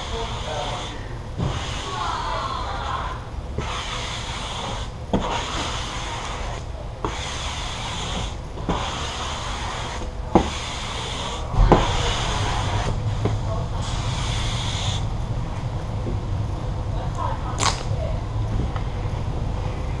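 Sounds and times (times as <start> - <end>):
squeegee scraping vinyl film: 0.0 - 15.1.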